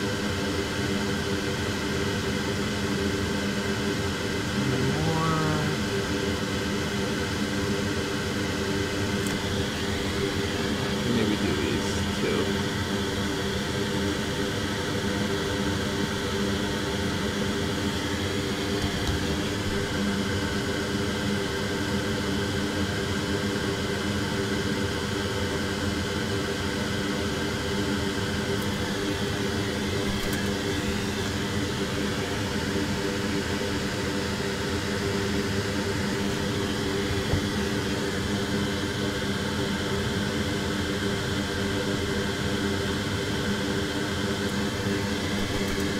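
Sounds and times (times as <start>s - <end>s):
electric fan whirring: 28.4s - 32.1s, 44.4s - 45.9s.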